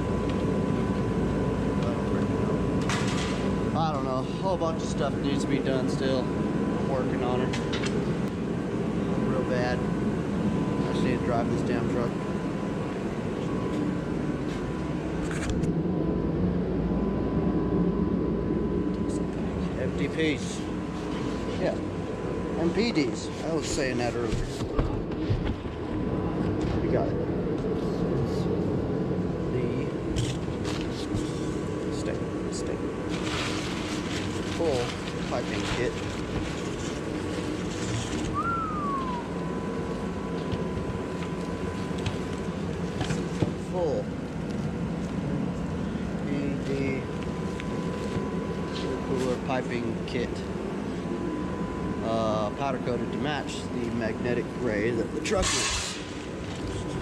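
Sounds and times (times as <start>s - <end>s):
heater roaring: 0.0s - 57.0s
low machine drone: 0.0s - 57.0s
whistle-like sliding tone: 38.3s - 39.4s.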